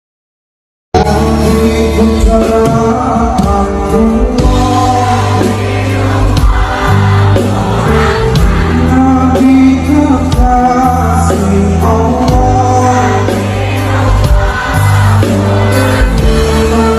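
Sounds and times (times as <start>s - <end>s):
song with beat and singing: 1.0s - 16.9s.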